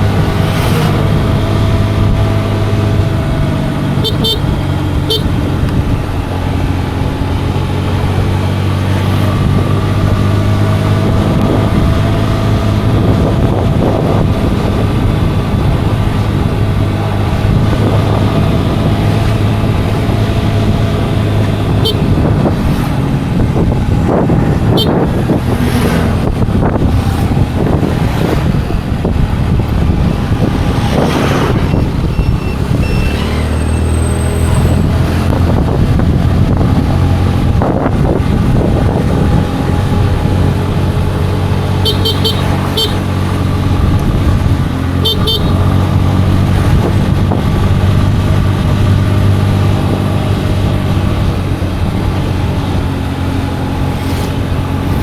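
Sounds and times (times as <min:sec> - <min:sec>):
scooter engine running: 0:00.0 - 0:33.3, 0:35.3 - 0:55.0
road and traffic noise: 0:00.0 - 0:55.0
vehicle horn short beeps: 0:04.0 - 0:05.4, 0:21.8 - 0:22.1, 0:24.7 - 0:25.0, 0:32.1 - 0:33.4, 0:41.8 - 0:43.1, 0:45.0 - 0:45.7.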